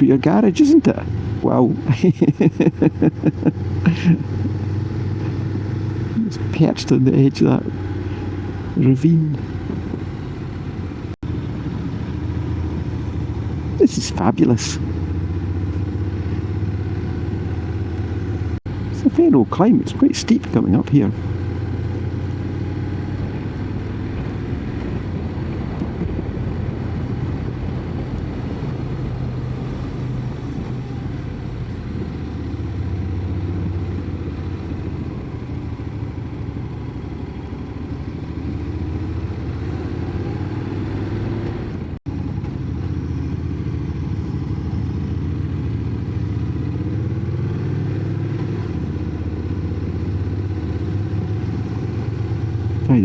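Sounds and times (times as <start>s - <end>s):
motorcycle engine climbing: 0.0s - 53.0s.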